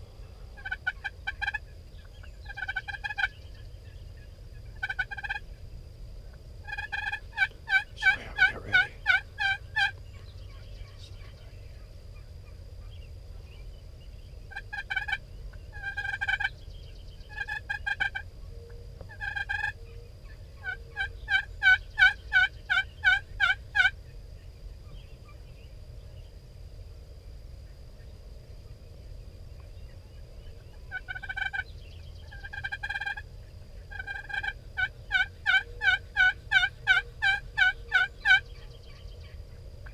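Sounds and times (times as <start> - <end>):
turkey yelps: 6.7 - 9.9, 19.2 - 23.9, 32.3 - 33.2, 33.9 - 39.0.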